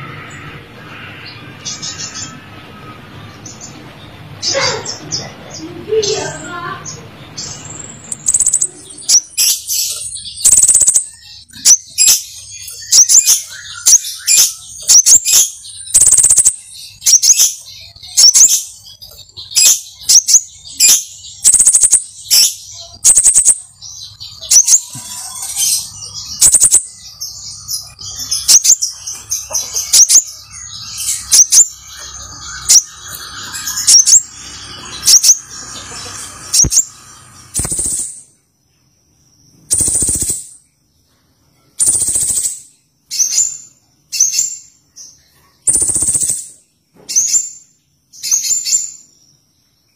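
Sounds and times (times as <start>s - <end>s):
bird chirping: 0.0s - 49.9s
sharp clicks or flutters: 37.5s - 38.0s.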